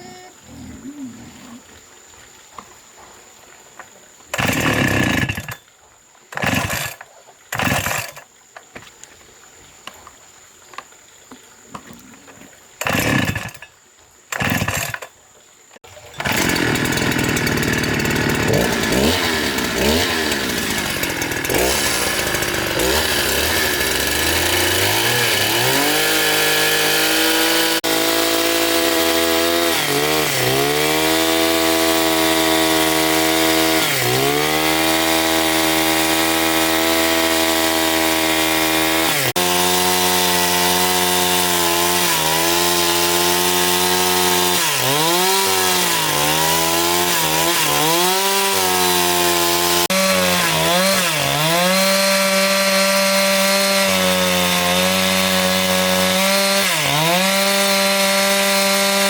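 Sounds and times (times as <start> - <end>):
two-stroke chainsaw revving: 4.3 - 5.6, 6.3 - 8.2, 12.8 - 13.7, 14.3 - 15.1, 15.9 - 59.0.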